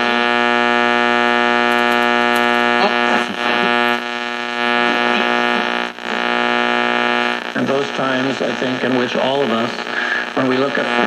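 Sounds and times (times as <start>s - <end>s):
loud buzzing radio hum: 0.0s - 11.0s
broadcast voice fragments: 1.6s - 4.1s, 7.4s - 11.0s.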